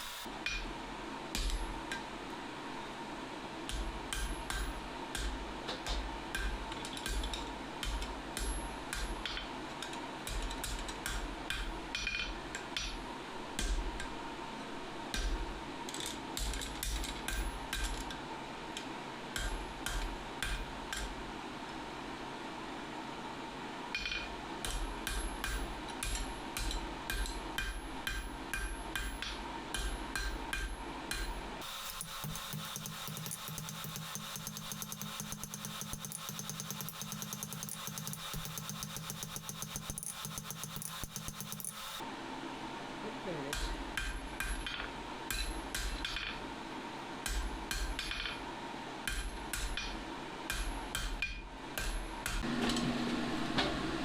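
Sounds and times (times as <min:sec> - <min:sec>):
hammer on steel on anvil: 0:31.6 - 0:42.0.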